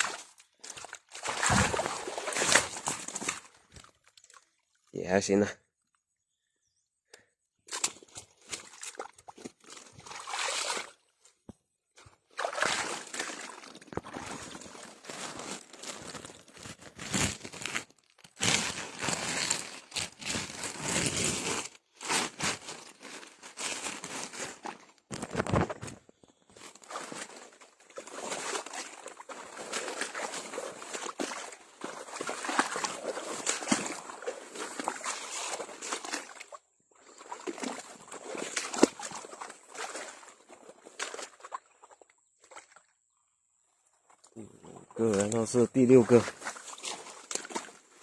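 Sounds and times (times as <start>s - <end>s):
netting rustling: 0.0s - 4.4s, 12.4s - 36.4s
water sloshing and dripping: 0.0s - 4.9s, 7.7s - 17.8s, 26.3s - 43.2s, 44.0s - 48.0s.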